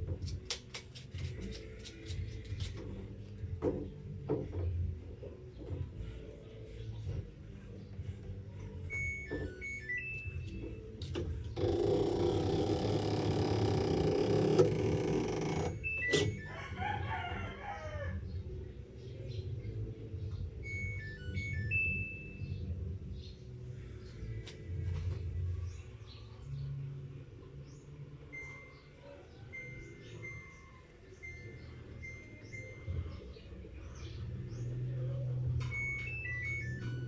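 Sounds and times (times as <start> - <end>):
rooster crowing: 16.4 - 18.2.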